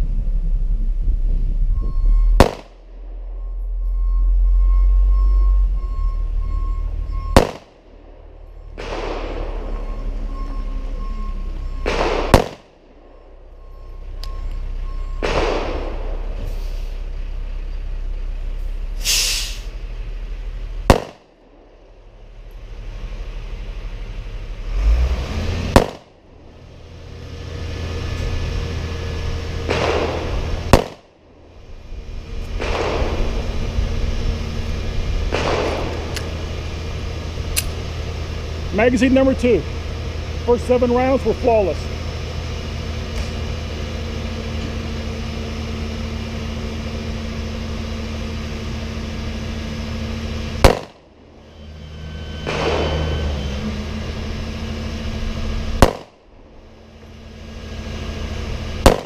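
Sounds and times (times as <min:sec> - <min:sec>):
pistol shots: 0:02.4 - 0:02.9, 0:07.3 - 0:07.8, 0:08.8 - 0:09.7, 0:11.8 - 0:12.8, 0:15.2 - 0:16.1, 0:20.9 - 0:21.4, 0:25.7 - 0:26.1, 0:29.7 - 0:31.1, 0:32.6 - 0:33.3, 0:35.3 - 0:36.3, 0:50.6 - 0:51.0, 0:55.8 - 0:56.2.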